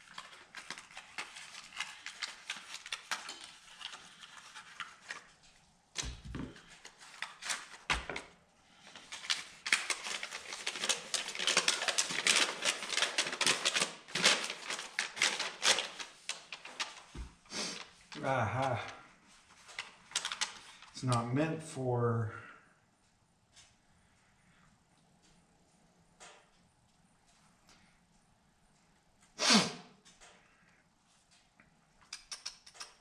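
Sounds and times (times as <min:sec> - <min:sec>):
packaging crinkling and crackling: 0:00.0 - 0:21.2.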